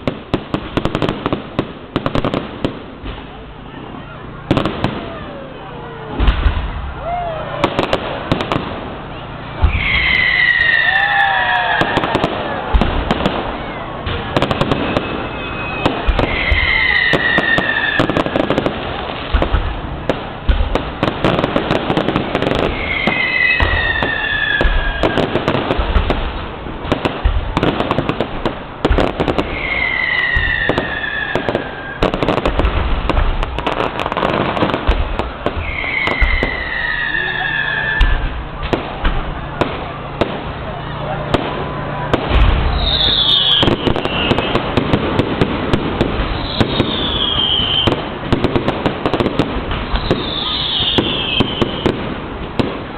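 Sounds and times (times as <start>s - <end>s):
fireworks bangs and crackles: 0.0s - 52.9s
firework falling whistle: 9.5s - 18.7s, 21.9s - 26.2s, 28.9s - 32.6s, 33.5s - 39.6s, 41.4s - 44.9s, 46.2s - 48.0s, 49.7s - 52.0s.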